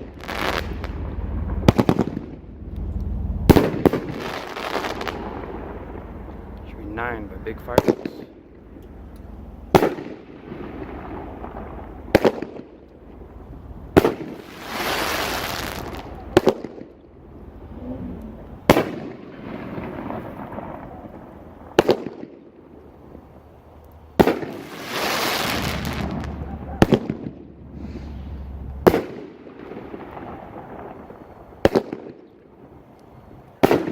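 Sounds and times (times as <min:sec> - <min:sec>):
fireworks crackling hiss: 0:00.0 - 0:08.3, 0:09.7 - 0:17.8, 0:24.2 - 0:32.0
fireworks bangs: 0:00.0 - 0:08.7, 0:09.6 - 0:17.7, 0:18.6 - 0:22.8, 0:24.2 - 0:32.8, 0:33.6 - 0:33.9.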